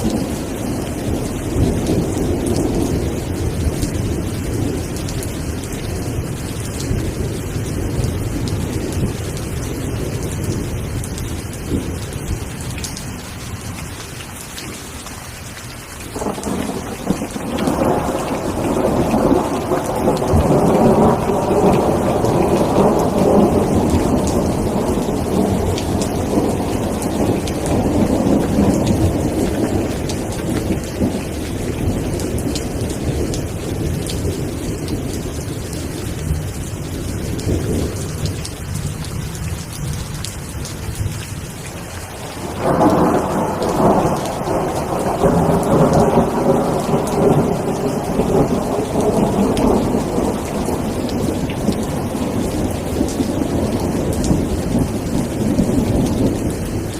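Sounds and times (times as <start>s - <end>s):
steady rain falling: 0.0s - 56.9s
rolling thunder: 16.2s - 41.2s, 42.1s - 56.9s.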